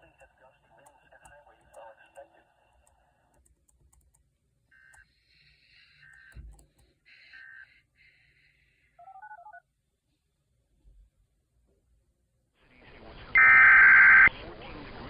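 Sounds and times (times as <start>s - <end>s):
faint electronic beeps: 4.7s - 7.8s.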